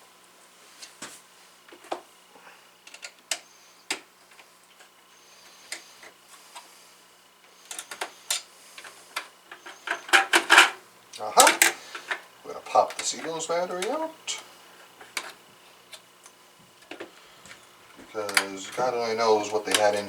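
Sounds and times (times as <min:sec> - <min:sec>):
clicks and clatter of server parts: 0:02.8 - 0:05.0, 0:07.4 - 0:12.2, 0:12.8 - 0:20.0.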